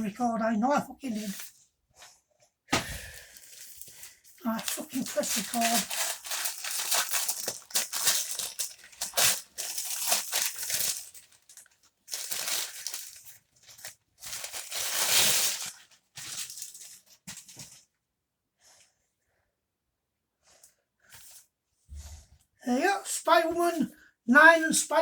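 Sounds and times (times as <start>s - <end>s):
packaging torn and crumpled: 3.0s - 16.9s.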